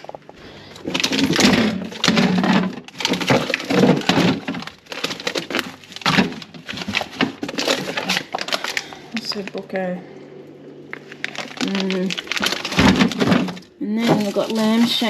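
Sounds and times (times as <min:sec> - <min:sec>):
plastic-wrapped packs crinkling: 0:00.0 - 0:09.6, 0:11.0 - 0:15.0.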